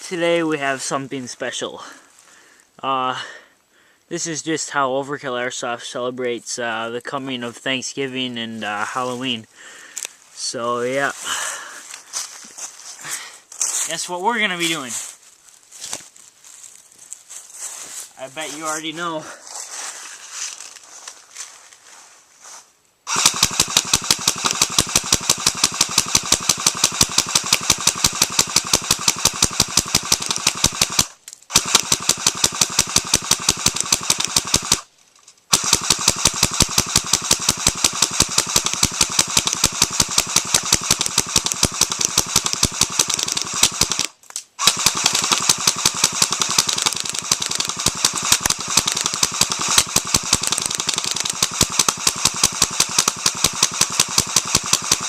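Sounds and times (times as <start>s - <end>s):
airsoft guns automatic fire: 23.1s - 34.9s, 35.5s - 55.0s.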